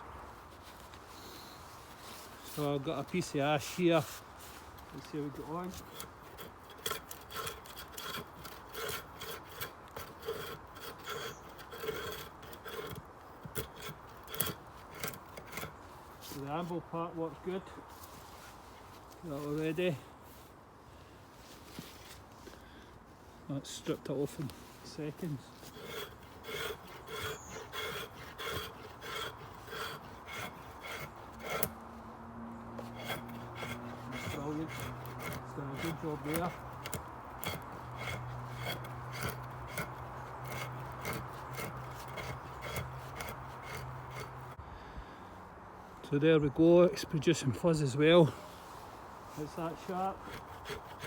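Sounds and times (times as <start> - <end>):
bark rasping on knife spine: 5.2 - 15.8, 25.2 - 31.8, 32.8 - 44.6, 49.4 - 51.0.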